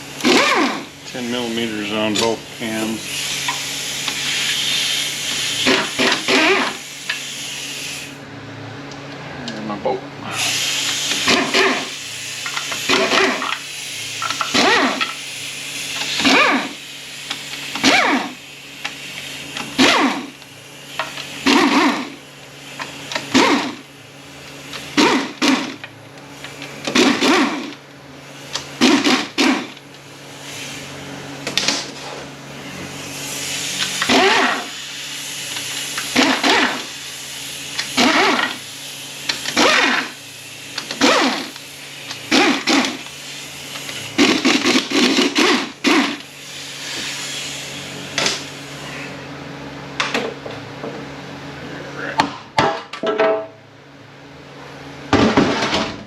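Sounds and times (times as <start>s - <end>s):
air ratchet buzzing spins: 0.0s - 8.2s, 10.3s - 31.0s, 32.8s - 49.1s
steady low hum: 0.0s - 56.0s.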